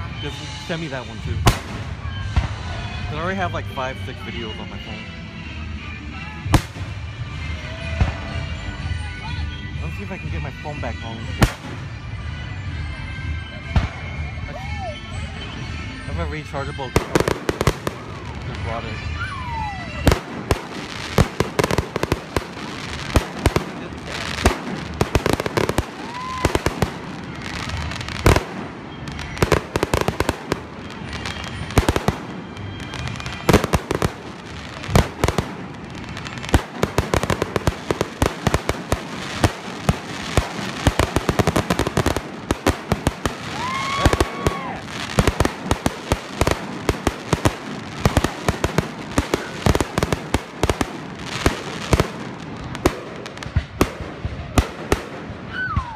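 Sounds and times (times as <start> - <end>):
fireworks bangs and crackling: 0.0 - 5.1, 6.1 - 9.0, 9.7 - 55.9
firework whistling: 16.6 - 55.9.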